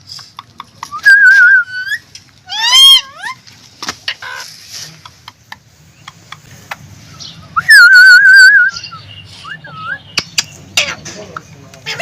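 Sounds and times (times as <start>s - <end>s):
parakeet warbling whistle: 7.6s - 8.9s
parakeet clicks and chirps: 10.1s - 11.5s.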